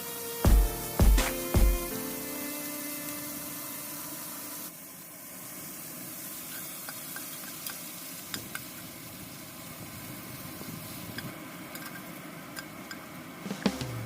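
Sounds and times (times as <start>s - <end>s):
food sizzling in a pan: 0.0s - 12.2s
crackling pops: 0.5s - 2.3s.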